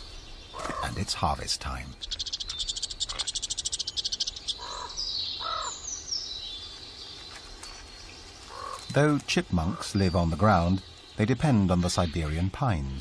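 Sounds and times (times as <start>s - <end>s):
short lower bird calls: 0.0s - 1.0s, 1.8s - 7.4s, 8.4s - 9.0s.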